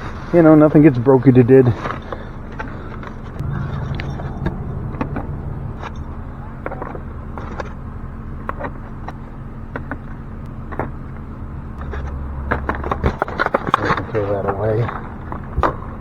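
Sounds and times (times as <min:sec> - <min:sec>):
steady low hum: 0:02.1 - 0:13.7.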